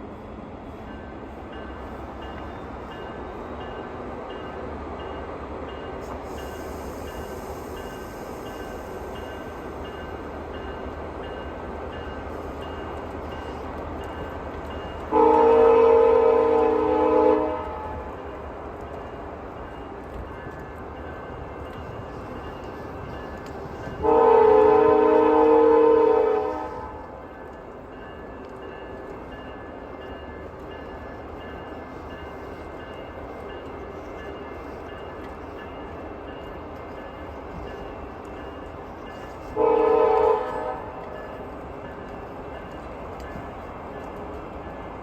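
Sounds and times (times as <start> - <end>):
train wheels rumbling on rails: 0.0 - 45.0
locomotive air horn chord: 15.1 - 18.1, 24.0 - 27.0, 39.4 - 41.0.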